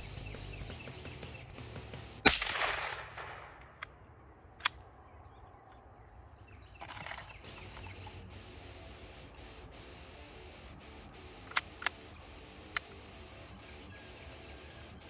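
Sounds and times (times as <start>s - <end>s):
quieter sharp crack: 1.8s - 5.0s
gunshot with echo: 2.2s - 3.9s.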